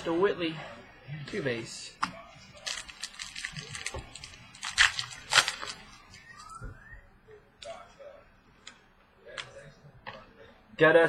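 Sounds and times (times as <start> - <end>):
trading cards rustling: 2.5 - 6.5.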